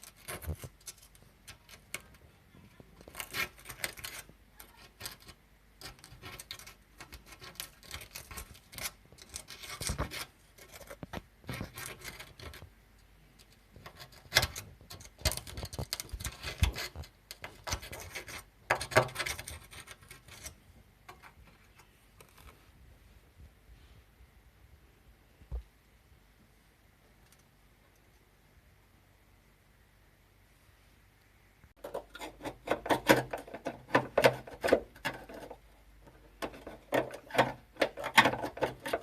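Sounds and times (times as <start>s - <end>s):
scratching and rubbing: 0.0s - 23.1s, 31.8s - 39.0s
sharp clicks and knocks: 31.7s - 39.0s.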